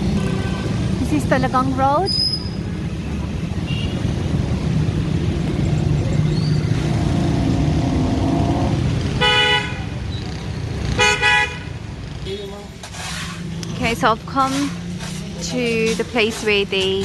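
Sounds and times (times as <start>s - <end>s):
traffic engine rumble: 0.0s - 17.0s
vehicle horn toot: 9.2s - 9.9s, 11.0s - 11.6s.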